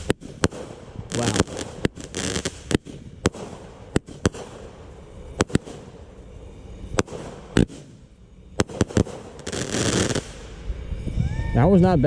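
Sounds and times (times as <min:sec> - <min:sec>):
fireworks bangs: 0:00.0 - 0:06.2, 0:06.8 - 0:10.6
low crackling of fireworks: 0:00.0 - 0:11.9.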